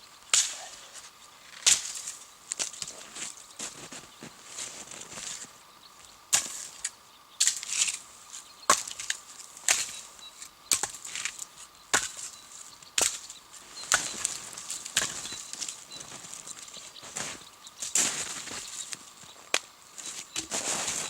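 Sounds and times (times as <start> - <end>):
axe chopping wood: 11.9 - 12.2.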